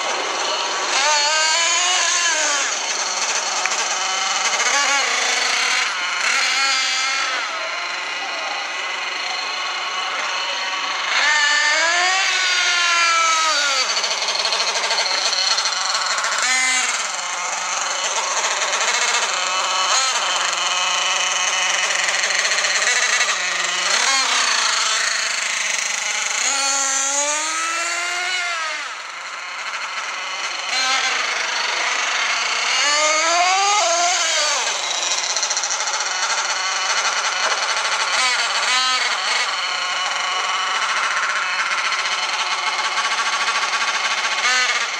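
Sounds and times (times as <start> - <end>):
small engine revving buzz: 0.0 - 44.9.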